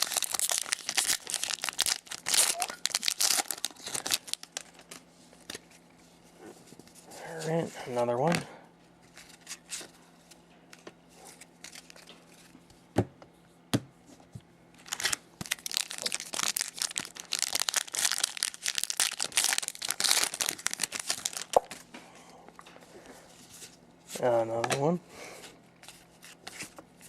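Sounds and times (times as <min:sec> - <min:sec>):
wrapper crinkling and tearing: 0:00.0 - 0:05.6, 0:11.3 - 0:12.5, 0:14.8 - 0:21.8.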